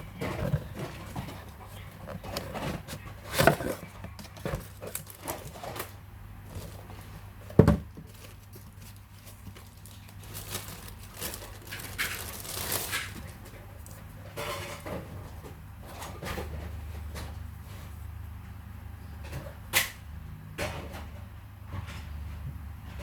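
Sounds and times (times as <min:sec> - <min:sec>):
packaging crinkling and tearing: 0:00.4 - 0:07.0, 0:08.0 - 0:13.4.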